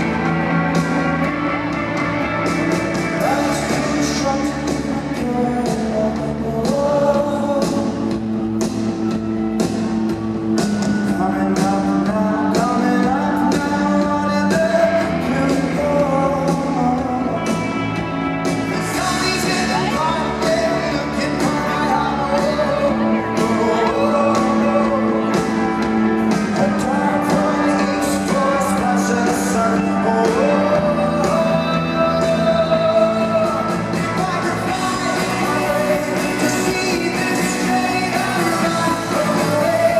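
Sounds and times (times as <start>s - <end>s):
man singing: 0.0s - 8.9s, 10.7s - 39.9s
rock band playing live: 0.0s - 39.9s
steady drum beat: 18.4s - 39.9s.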